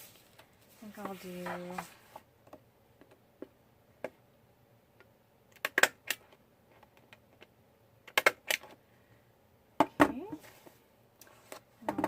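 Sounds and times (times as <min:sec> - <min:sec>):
hand stapler clicking: 0:08.1 - 0:08.6.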